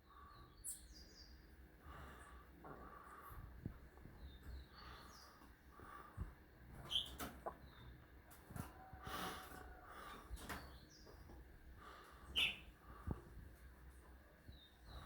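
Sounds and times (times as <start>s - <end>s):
short bird calls: 6.9s - 7.7s, 12.3s - 12.7s.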